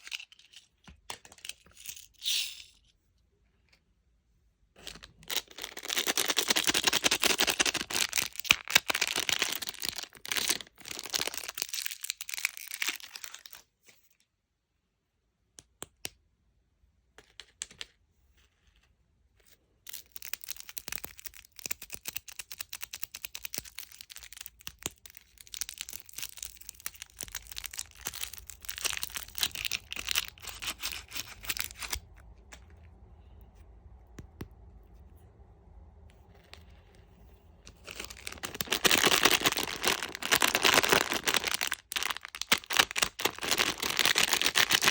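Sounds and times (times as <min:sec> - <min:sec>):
plastic wrappers crinkling: 0:04.8 - 0:13.6, 0:19.9 - 0:32.2, 0:37.7 - 0:44.9
faint low hum: 0:26.7 - 0:41.9.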